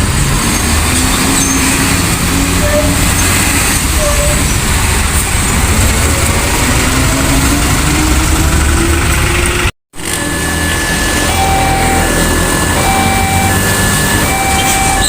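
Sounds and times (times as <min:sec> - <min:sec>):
heavy road traffic: 0:00.0 - 0:15.0
vehicle engine speeding up: 0:00.0 - 0:15.0
two-tone electronic alarm: 0:10.1 - 0:15.0.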